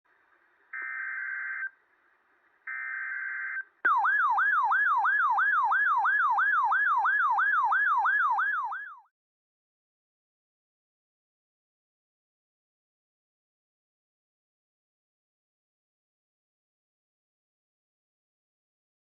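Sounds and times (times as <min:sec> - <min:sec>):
siren-like attention tone: 0:02.7 - 0:09.0.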